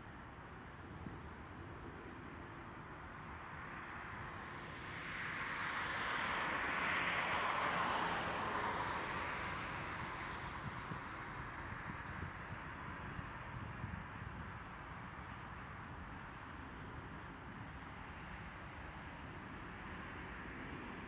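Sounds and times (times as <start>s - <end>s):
wind noise on microphone: 9.3s - 16.1s.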